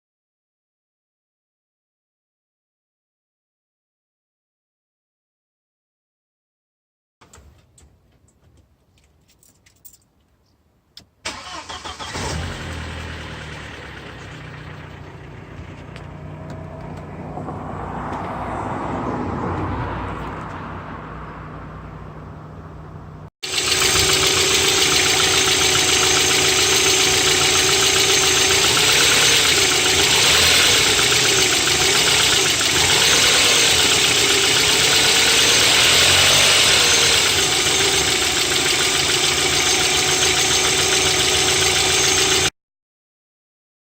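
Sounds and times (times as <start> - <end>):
car engine starting and idling: 11.2 - 42.5
engine lifters ticking: 23.5 - 42.5.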